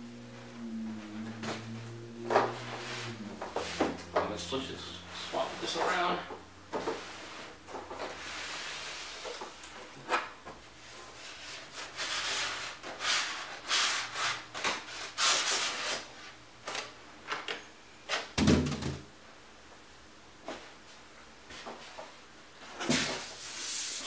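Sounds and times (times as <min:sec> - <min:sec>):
cardboard scraping and swishing: 0:01.4 - 0:04.0.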